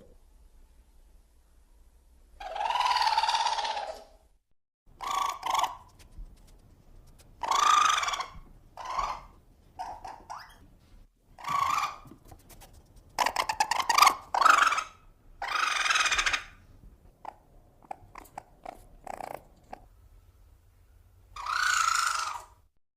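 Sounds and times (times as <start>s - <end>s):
creature growling calls: 2.4s - 4.1s.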